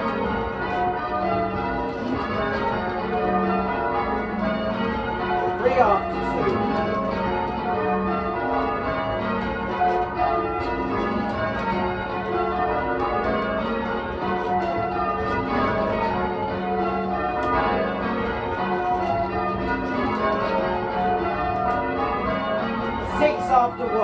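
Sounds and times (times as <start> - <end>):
church bells ringing: 0.0 - 24.0.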